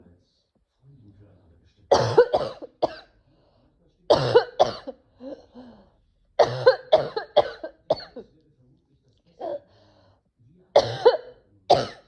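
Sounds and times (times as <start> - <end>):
woman coughing: 1.9 - 3.0, 4.1 - 5.5, 6.4 - 8.2, 10.8 - 12.0.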